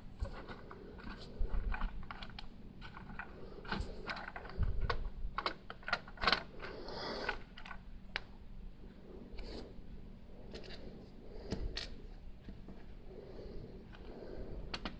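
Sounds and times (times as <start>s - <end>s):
plastic bricks clicking and rattling: 0.2s - 8.3s.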